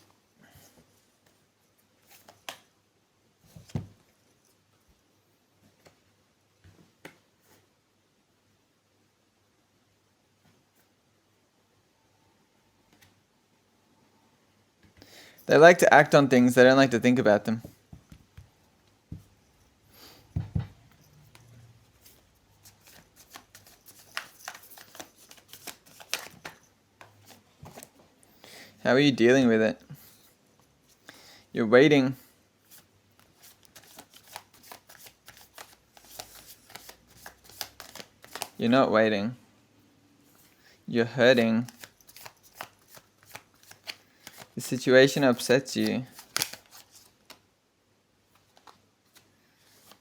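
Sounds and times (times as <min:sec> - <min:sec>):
cards being shuffled: 0:02.0 - 0:02.7, 0:20.9 - 0:27.9, 0:32.7 - 0:38.6, 0:41.4 - 0:47.4, 0:48.4 - 0:50.0.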